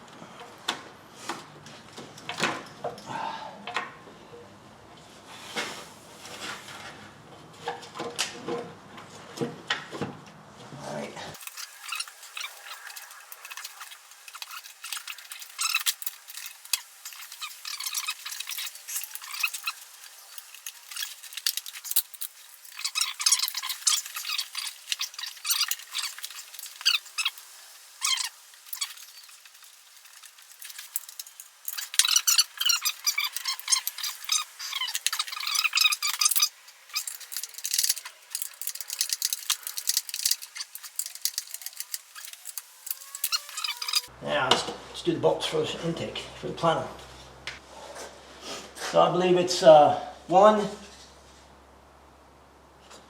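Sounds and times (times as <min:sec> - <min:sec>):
engine parts clicking and rattling: 0:28.0 - 0:44.1.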